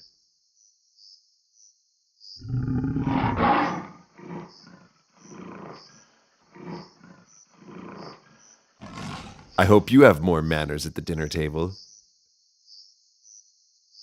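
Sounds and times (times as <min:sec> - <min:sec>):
lioness snarling and growling: 0:02.4 - 0:09.6.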